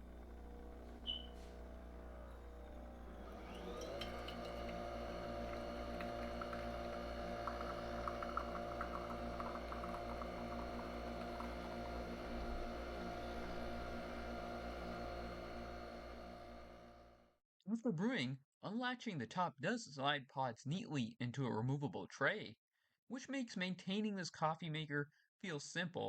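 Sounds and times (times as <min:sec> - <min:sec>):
coffee machine motor whine: 0:00.0 - 0:17.2.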